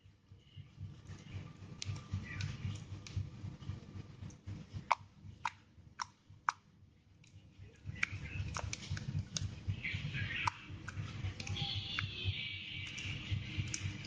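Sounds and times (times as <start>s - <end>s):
slime clicking and popping: 4.3s - 12.2s, 12.8s - 14.0s.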